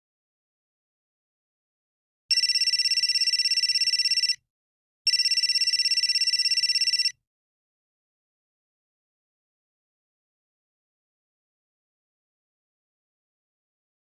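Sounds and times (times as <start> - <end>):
cell phone ringing: 2.3 - 4.4, 5.1 - 7.2.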